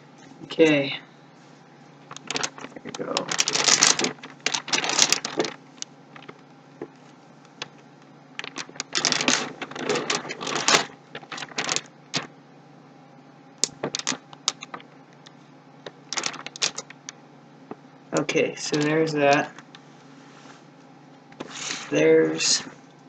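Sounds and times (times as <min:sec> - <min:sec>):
packaging crinkling: 0:02.0 - 0:12.3, 0:13.6 - 0:14.9, 0:15.8 - 0:17.2.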